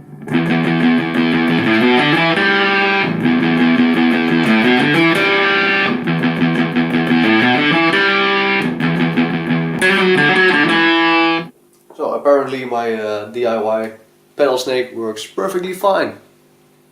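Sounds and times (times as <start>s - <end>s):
electric guitar chords: 0.0s - 11.5s.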